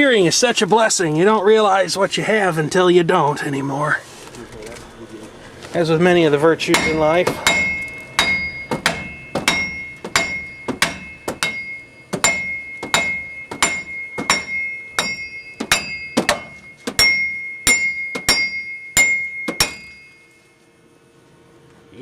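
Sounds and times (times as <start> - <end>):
hammer striking steel: 6.6 - 20.3.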